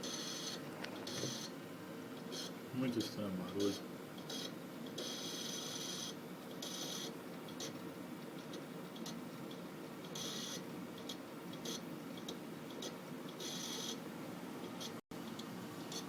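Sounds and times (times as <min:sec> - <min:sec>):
hard drive high-pitched chirps: 0:00.0 - 0:01.6, 0:02.2 - 0:07.8, 0:10.1 - 0:14.0
hard drive humming: 0:00.0 - 0:16.0.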